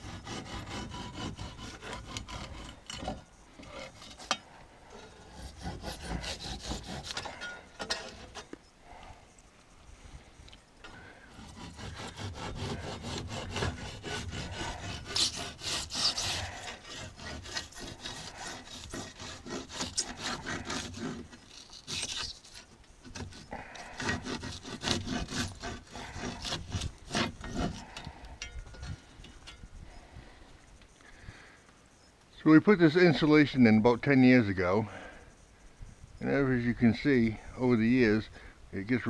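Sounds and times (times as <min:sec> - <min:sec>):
handsaw cutting wood: 0:00.0 - 0:04.4, 0:05.1 - 0:07.3, 0:11.3 - 0:27.9.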